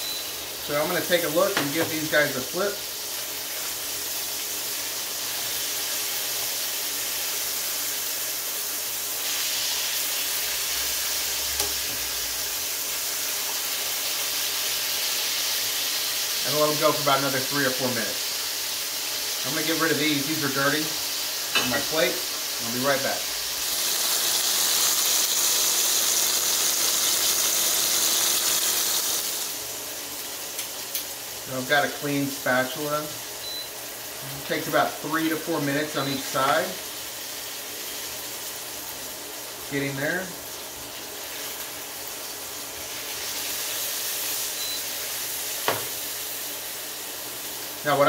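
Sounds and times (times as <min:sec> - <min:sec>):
chicken sizzling in a hot skillet: 0:00.0 - 0:48.0.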